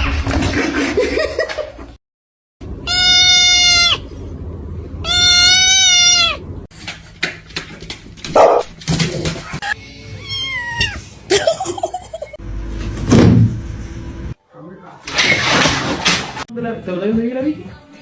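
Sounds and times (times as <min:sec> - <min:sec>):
cat meowing: 0:02.9 - 0:04.0, 0:05.0 - 0:06.4, 0:09.8 - 0:11.1.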